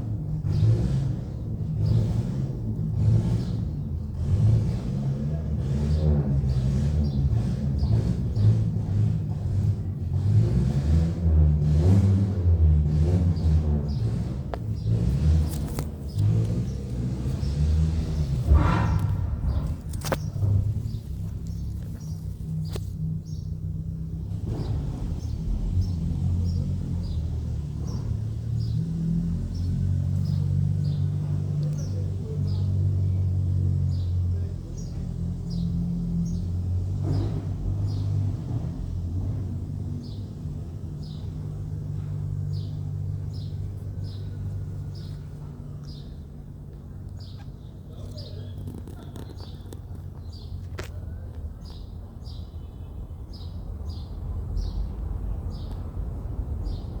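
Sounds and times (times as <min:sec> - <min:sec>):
engine humming: 0:00.0 - 0:57.0
motor rumbling: 0:00.0 - 0:57.0
bird chirping: 0:14.7 - 0:31.1.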